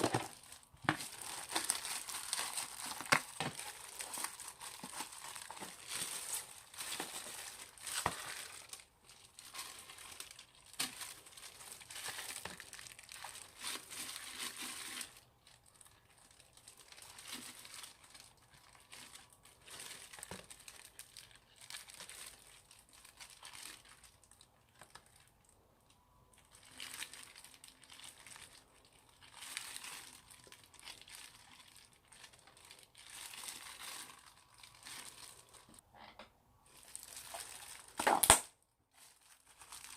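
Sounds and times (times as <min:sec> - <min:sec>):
slime crackling: 0:00.0 - 0:25.4.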